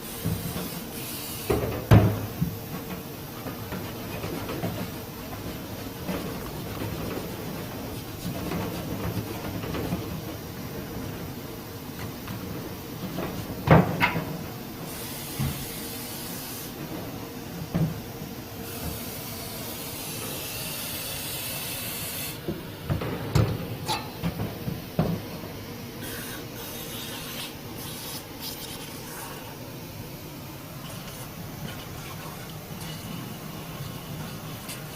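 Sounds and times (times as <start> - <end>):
high hissing bursts: 0.0 - 1.6, 14.9 - 16.7
sharp knocks and clanks: 1.4 - 14.6, 16.8 - 19.1, 22.4 - 25.4.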